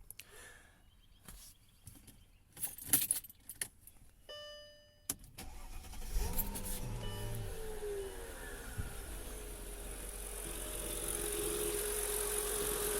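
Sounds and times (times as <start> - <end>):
car keys jangling: 2.6 - 3.8
car engine cranking and starting: 5.3 - 12.9.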